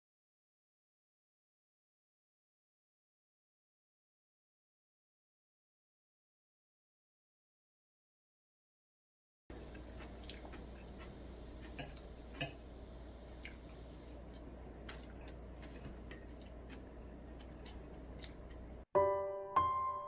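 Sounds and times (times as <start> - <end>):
steady low hum: 9.5 - 18.9
utensils clinking against dish: 15.7 - 16.5.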